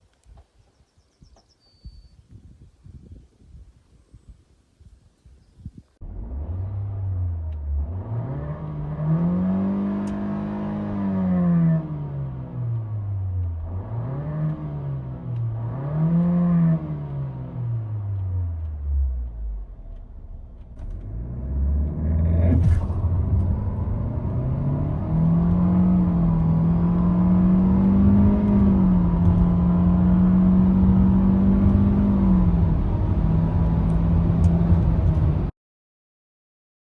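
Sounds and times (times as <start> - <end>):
car engine revving: 6.0 - 35.5
click: 10.0 - 10.2, 18.1 - 21.1
engine at full throttle: 13.6 - 35.5.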